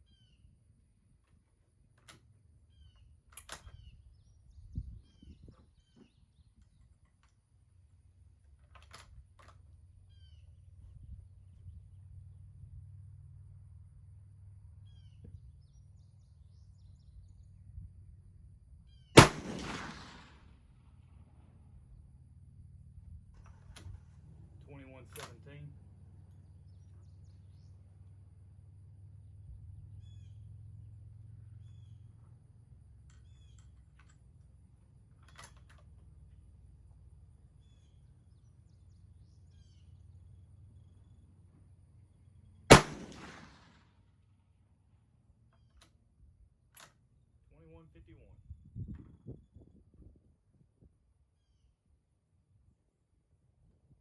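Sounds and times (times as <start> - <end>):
faint bird chirps: 0.0 - 0.5, 10.0 - 10.9, 29.9 - 30.5, 31.4 - 32.3
low steady background: 0.0 - 48.8
small click: 2.9 - 3.8, 8.6 - 9.6, 46.7 - 47.0
rifle shot with echo: 19.2 - 20.7, 42.7 - 43.9.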